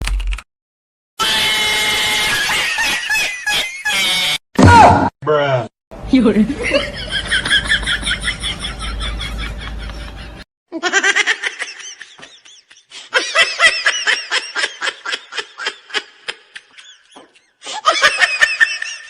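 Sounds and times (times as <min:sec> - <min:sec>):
laughter: 0:06.6 - 0:19.0.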